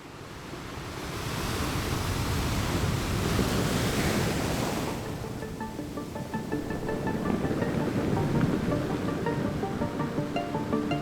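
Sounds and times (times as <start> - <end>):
waves washing: 1.3 - 11.0
music: 4.9 - 11.0.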